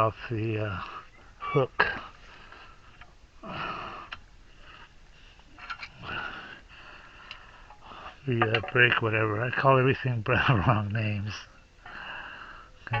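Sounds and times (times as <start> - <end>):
faint clicks: 7.2 - 7.8.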